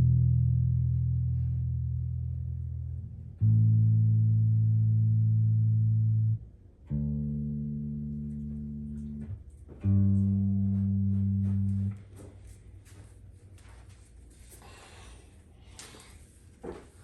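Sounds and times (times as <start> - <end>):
electric bass sustained notes: 0.0 - 12.6.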